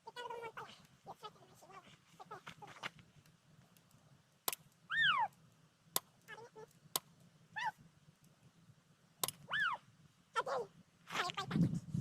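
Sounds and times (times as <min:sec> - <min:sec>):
animal calls: 0:04.9 - 0:05.4, 0:07.5 - 0:07.8, 0:09.4 - 0:10.7.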